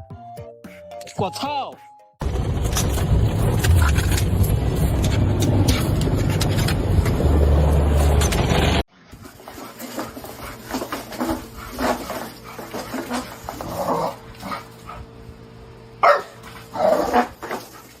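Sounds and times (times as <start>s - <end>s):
dog barking: 16.0s - 17.3s.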